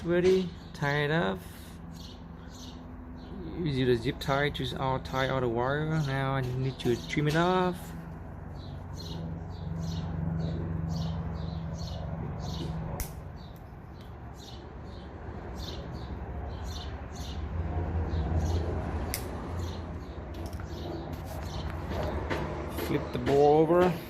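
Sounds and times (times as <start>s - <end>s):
cutters snipping: 12.6s - 14.2s, 19.0s - 19.4s.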